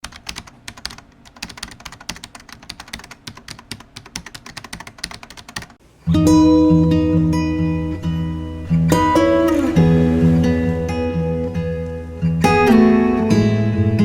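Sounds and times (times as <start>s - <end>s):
rapid keyboard typing: 0.0s - 5.8s
acoustic guitar chord strummed: 6.0s - 14.0s.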